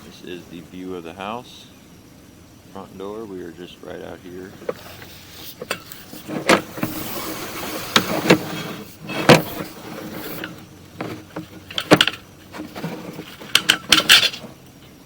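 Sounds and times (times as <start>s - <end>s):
steady hiss: 0.0s - 15.0s
equipment knocks and clunks: 5.6s - 7.2s, 7.8s - 9.8s, 10.4s - 14.6s.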